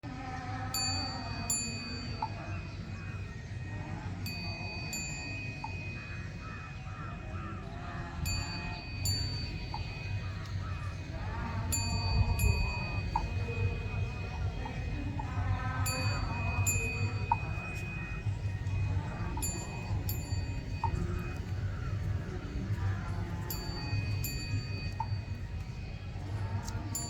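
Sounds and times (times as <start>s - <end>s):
small bell ringing: 0.7s - 2.7s, 4.2s - 6.1s, 8.3s - 10.2s, 11.7s - 14.9s, 15.8s - 22.0s, 23.4s - 25.6s.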